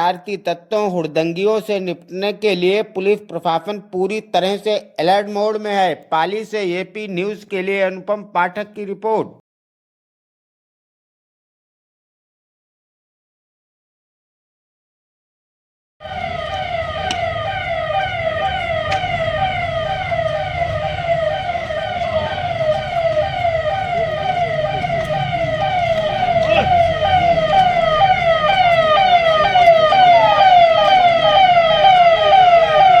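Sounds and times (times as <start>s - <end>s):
police siren wailing: 16.0s - 33.0s
low rumble: 16.1s - 32.8s.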